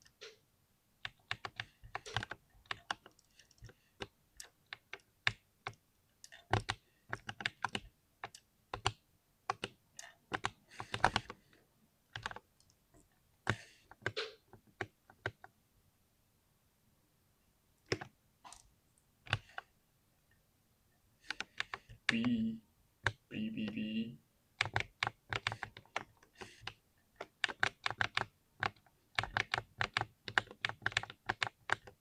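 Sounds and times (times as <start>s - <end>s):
typing on computer keyboard: 1.0s - 11.4s, 12.1s - 12.8s, 13.4s - 15.5s, 17.8s - 18.6s, 19.3s - 19.7s, 21.3s - 22.3s, 24.6s - 32.0s.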